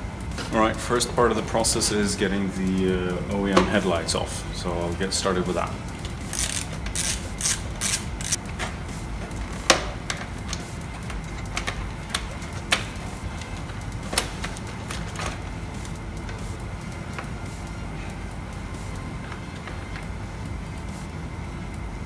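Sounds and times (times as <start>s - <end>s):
ratchet clicking: 6.1s - 8.4s.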